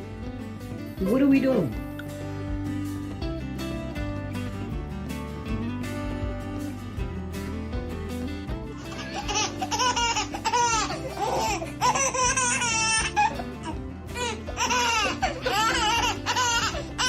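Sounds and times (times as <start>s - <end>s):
background music: 0.0s - 17.0s
baby laughing: 8.8s - 17.0s.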